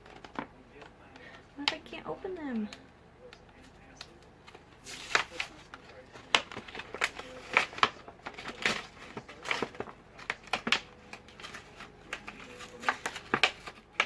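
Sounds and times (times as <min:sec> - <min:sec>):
packaging clicking and crinkling: 0:00.0 - 0:14.0.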